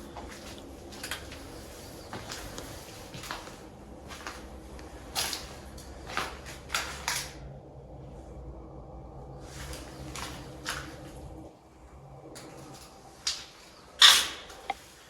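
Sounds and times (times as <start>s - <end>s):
footsteps on a trail: 0.0s - 7.1s.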